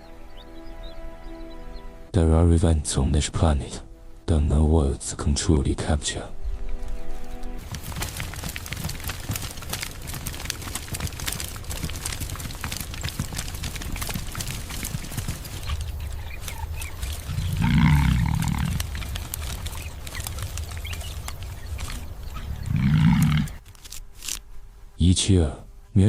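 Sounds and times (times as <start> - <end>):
hooves clattering and rumbling: 6.6 - 24.4
low animal calls: 7.7 - 23.6.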